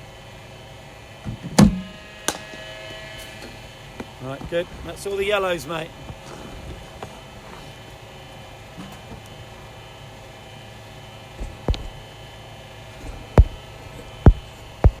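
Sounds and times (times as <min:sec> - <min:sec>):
machine hum: 0:00.0 - 0:15.0
heavy thumps: 0:01.2 - 0:02.7, 0:13.0 - 0:13.6, 0:14.3 - 0:15.0.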